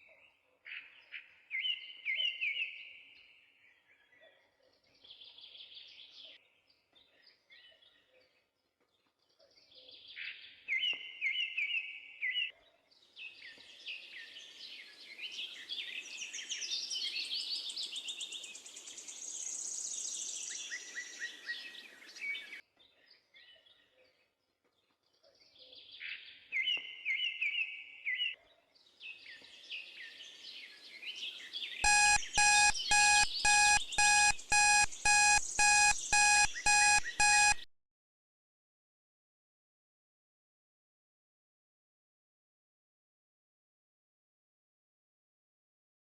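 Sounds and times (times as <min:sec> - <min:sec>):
alarm timer beeping: 0:31.9 - 0:37.7.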